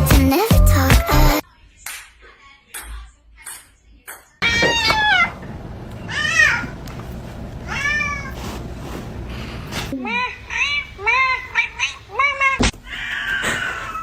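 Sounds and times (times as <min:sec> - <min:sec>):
cat meowing: 0:04.4 - 0:05.4, 0:06.0 - 0:06.7, 0:07.7 - 0:08.3.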